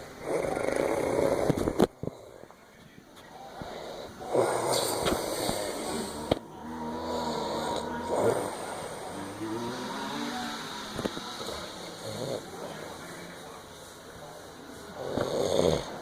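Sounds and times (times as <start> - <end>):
person snoring: 0.2 - 2.3, 3.8 - 12.7, 15.0 - 16.0.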